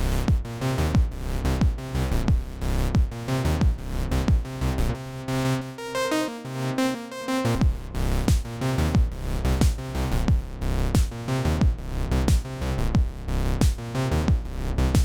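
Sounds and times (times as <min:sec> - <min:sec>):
synth notes and chords: 0:00.0 - 0:13.0
four-on-the-floor kick drum: 0:00.3 - 0:04.5, 0:07.6 - 0:14.4.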